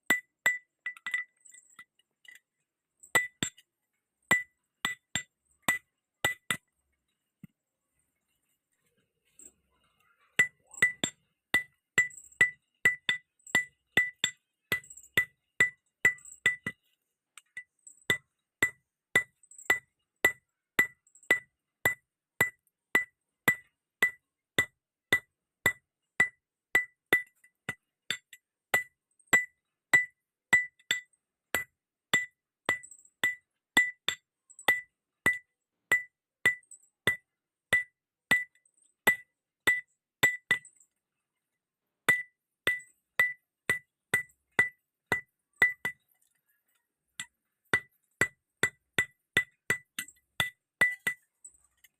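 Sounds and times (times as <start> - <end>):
hammer striking steel on anvil: 4.3 - 6.7, 10.4 - 16.8, 17.4 - 40.7, 42.1 - 46.0, 47.2 - 51.9.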